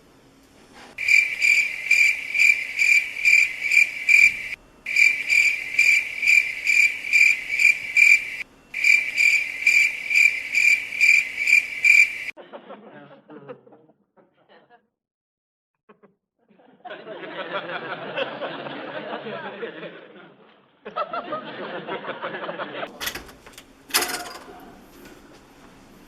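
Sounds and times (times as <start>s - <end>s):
cricket chirping: 1.0s - 12.4s.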